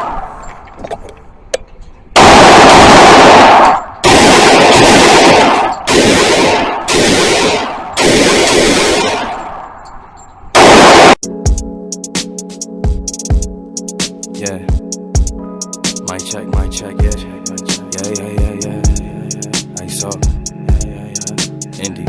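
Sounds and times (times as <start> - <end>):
automatic gunfire bursts: 2.2 - 9.4.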